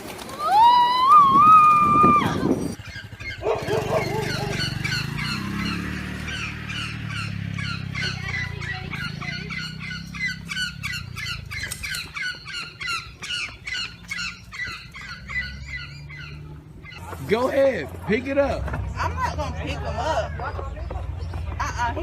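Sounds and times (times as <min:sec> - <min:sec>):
flock of birds squawking: 0:00.0 - 0:17.2.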